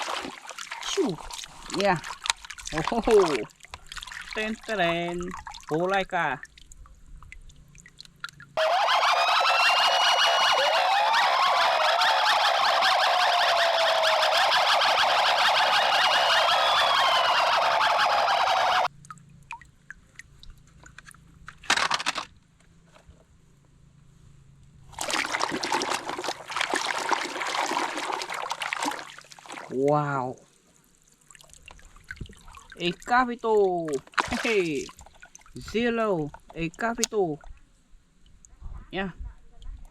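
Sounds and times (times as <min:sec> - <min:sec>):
water running: 0:00.0 - 0:06.6, 0:25.0 - 0:30.4, 0:31.1 - 0:37.4
toy electronic siren wailing: 0:08.6 - 0:18.9.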